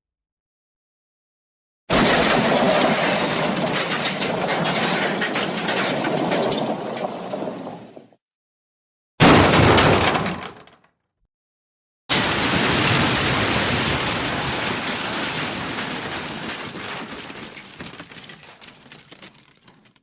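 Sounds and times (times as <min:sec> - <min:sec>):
falling debris rushing: 0:01.9 - 0:07.9, 0:09.2 - 0:10.7, 0:12.1 - 0:20.0
crash: 0:01.9 - 0:08.1, 0:09.2 - 0:10.8, 0:12.1 - 0:19.9.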